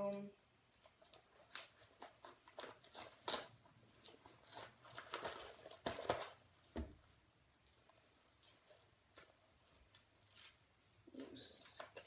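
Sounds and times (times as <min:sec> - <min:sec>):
velcro ripping: 0:09.7 - 0:11.1.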